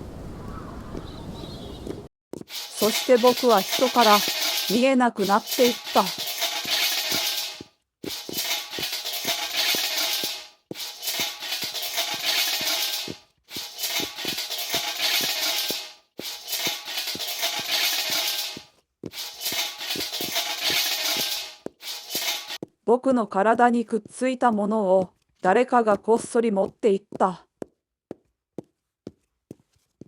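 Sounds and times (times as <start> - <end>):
shaker-like rattle: 2.5 - 22.6.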